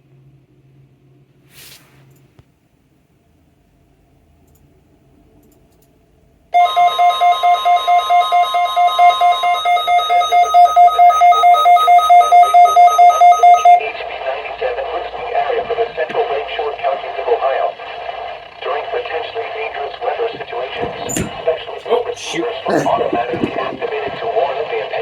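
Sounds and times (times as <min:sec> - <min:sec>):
alarm beeping rapidly: 0:06.6 - 0:13.8
steady warning tone: 0:06.6 - 0:13.8, 0:20.3 - 0:24.2
radio broadcast audio: 0:18.6 - 0:24.8.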